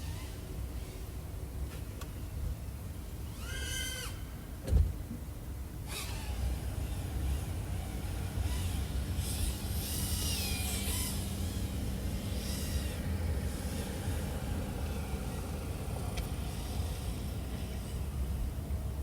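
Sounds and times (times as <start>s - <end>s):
quadcopter motors whining: 3.2s - 4.3s, 5.8s - 18.8s.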